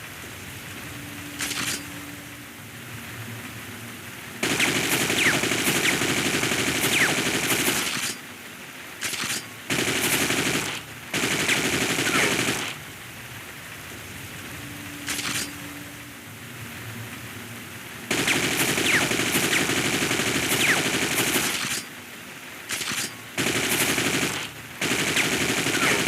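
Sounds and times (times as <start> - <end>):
steady hiss: 0.0 - 26.0
automatic rifle firing in bursts: 4.4 - 8.2, 9.0 - 12.8, 18.1 - 21.9, 22.7 - 26.0.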